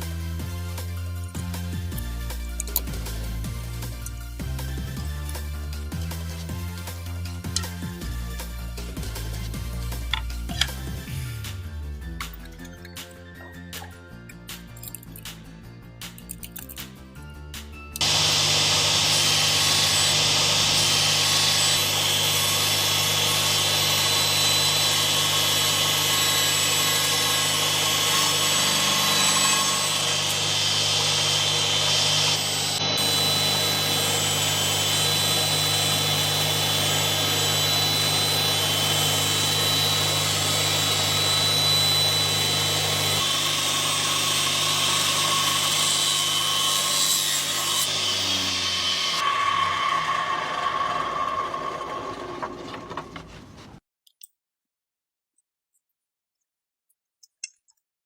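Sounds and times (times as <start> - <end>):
power tool motor running: 18.0 - 53.6.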